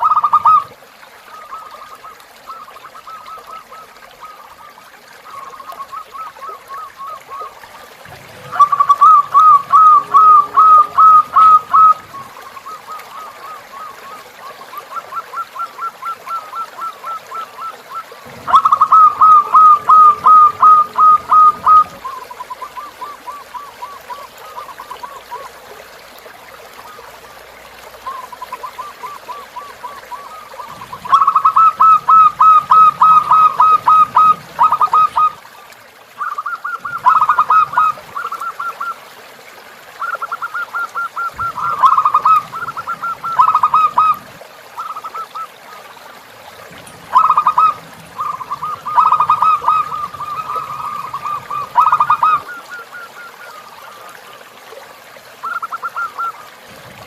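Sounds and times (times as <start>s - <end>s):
dove cooing: 0.0s - 0.7s, 8.2s - 25.6s, 28.0s - 35.4s, 36.2s - 38.9s, 40.0s - 45.6s, 46.8s - 54.0s
faint flowing river: 0.0s - 57.0s.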